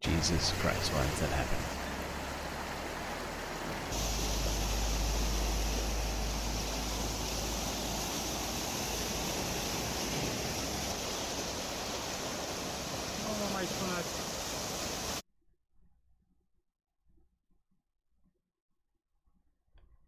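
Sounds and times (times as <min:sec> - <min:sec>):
deep rumble: 0:00.0 - 0:13.2
rushing floodwater: 0:00.0 - 0:15.2.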